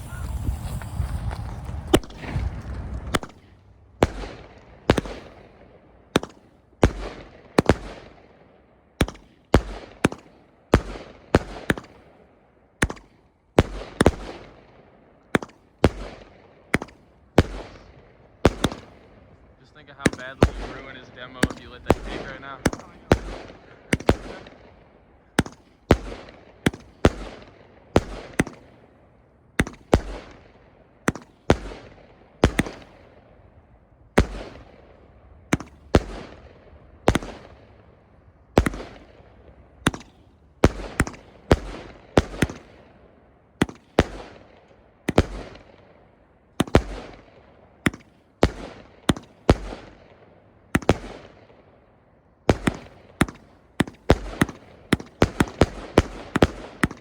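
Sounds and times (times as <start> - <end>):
fireworks bangs: 0.0 - 8.2, 15.4 - 28.8, 34.1 - 37.9, 52.5 - 57.0.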